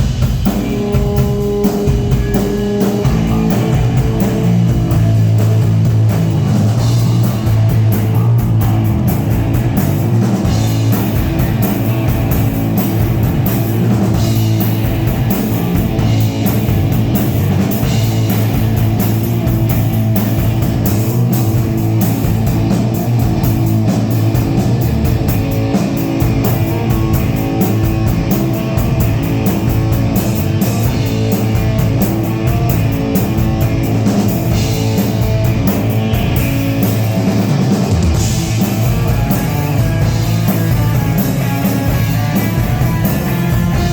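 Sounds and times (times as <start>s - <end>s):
drum kit: 0.0s - 43.9s
electric guitar: 0.0s - 43.9s.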